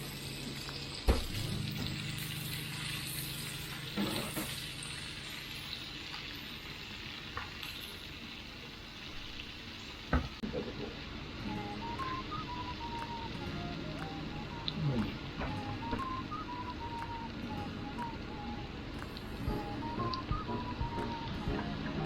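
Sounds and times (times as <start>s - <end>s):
food sizzling in a pan: 0.0s - 18.4s.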